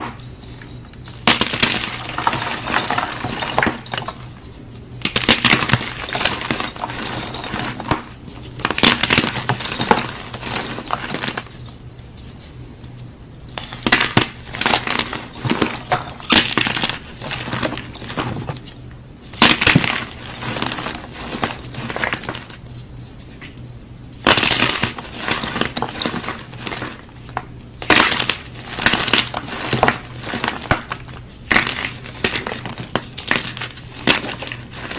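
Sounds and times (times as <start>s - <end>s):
chalk blocks crunching: 0.0s - 11.7s, 19.3s - 22.6s, 24.2s - 34.9s.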